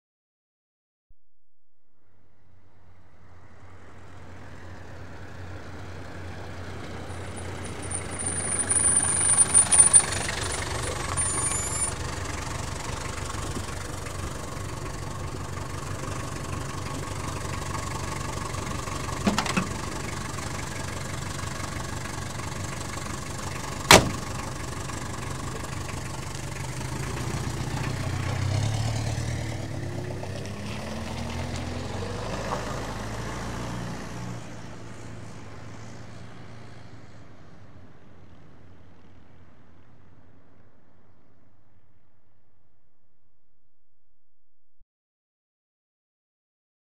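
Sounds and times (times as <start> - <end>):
car engine running: 3.0 - 31.6
brake squeal: 6.7 - 29.6.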